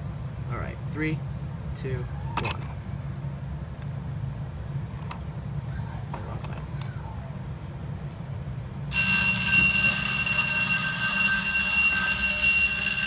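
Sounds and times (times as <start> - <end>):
fire alarm bell ringing: 8.9 - 13.0.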